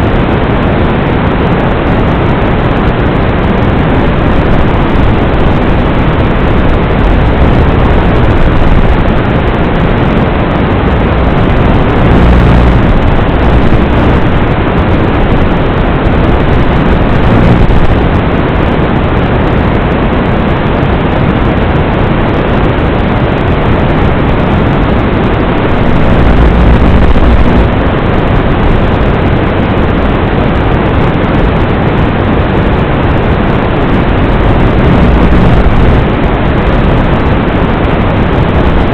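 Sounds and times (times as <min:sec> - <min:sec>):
loud steady rushing noise: 0:00.0 - 0:38.9.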